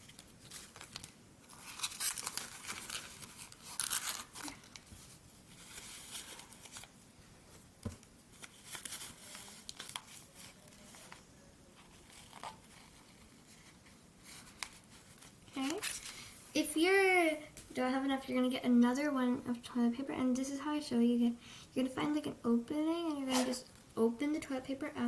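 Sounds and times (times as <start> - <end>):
toilet paper tearing and crumpling: 0.5 - 4.9.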